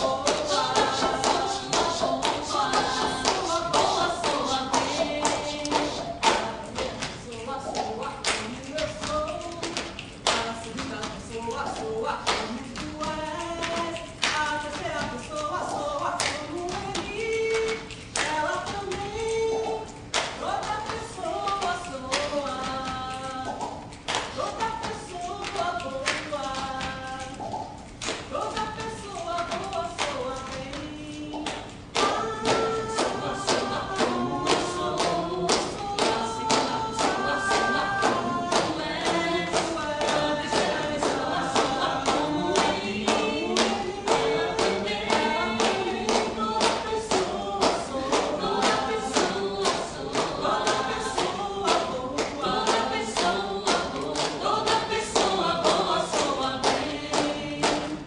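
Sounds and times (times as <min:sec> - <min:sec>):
steady beat of sharp taps: 0:00.0 - 0:58.0
voices singing in harmony: 0:00.0 - 0:58.0.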